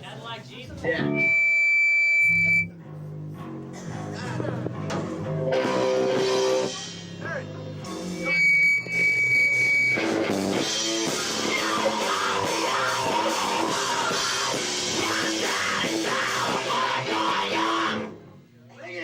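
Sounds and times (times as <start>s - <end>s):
live rock band playing loudly: 4.8s - 18.0s.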